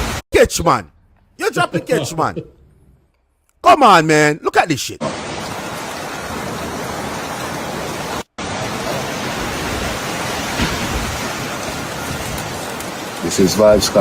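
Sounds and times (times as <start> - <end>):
rain: 5.0 - 14.0
storm wind: 5.0 - 14.0.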